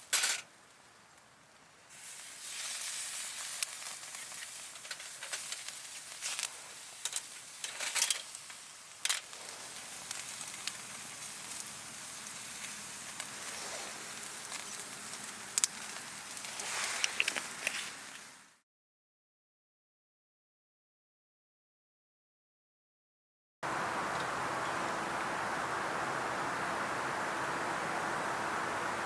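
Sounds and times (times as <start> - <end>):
campfire crackling and popping: 1.9 - 18.6.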